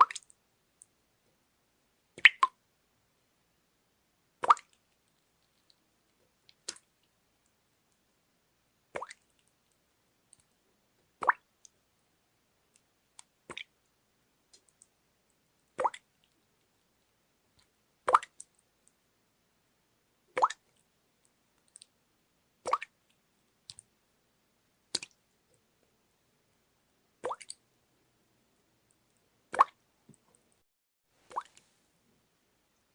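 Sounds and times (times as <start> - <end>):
water drops dripping: 0.0 - 0.9, 2.2 - 2.6, 27.2 - 27.6, 29.6 - 29.8, 31.3 - 31.6.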